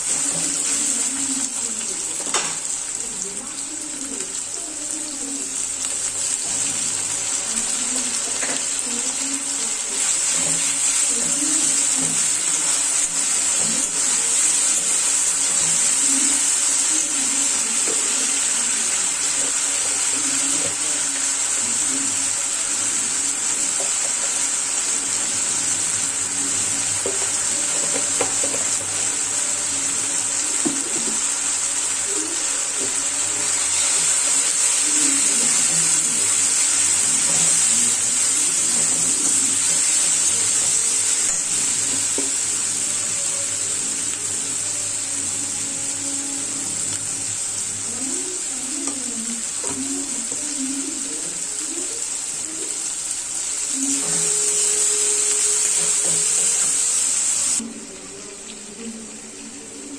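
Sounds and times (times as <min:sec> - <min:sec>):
food sizzling in a pan: 0:00.0 - 0:59.9
food being stirred: 0:26.5 - 0:29.3.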